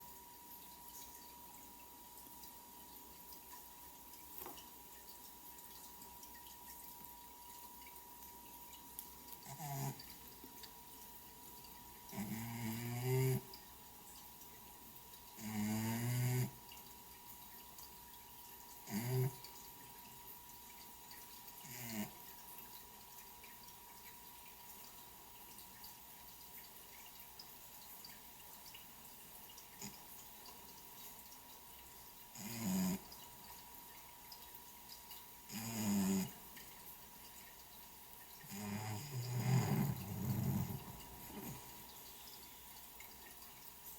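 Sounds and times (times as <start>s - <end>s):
cat snoring: 9.4s - 10.0s, 12.1s - 13.4s, 15.4s - 16.6s, 18.9s - 19.4s, 21.6s - 22.2s, 32.4s - 33.0s, 35.5s - 36.3s, 38.5s - 41.6s.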